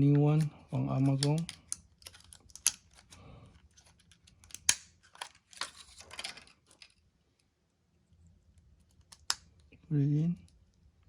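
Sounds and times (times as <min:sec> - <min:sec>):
plastic packaging clicks and rustles: 0:00.9 - 0:07.0
plastic packaging snap: 0:04.1 - 0:05.8, 0:09.0 - 0:09.6.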